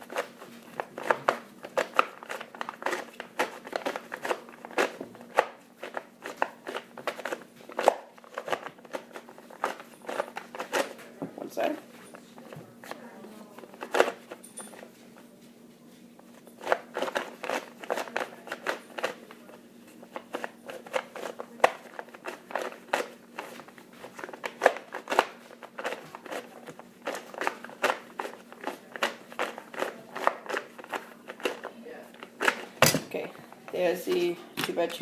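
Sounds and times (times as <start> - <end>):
puzzle cube plastic clicks: 0.1 - 10.9, 16.6 - 19.4, 20.1 - 32.7.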